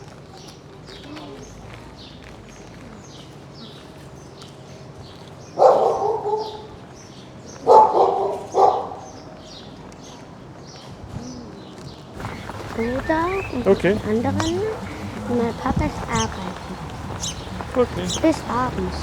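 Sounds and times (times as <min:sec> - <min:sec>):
dog barking: 0:05.6 - 0:06.7, 0:07.6 - 0:09.1
small birds chirping: 0:11.6 - 0:19.0.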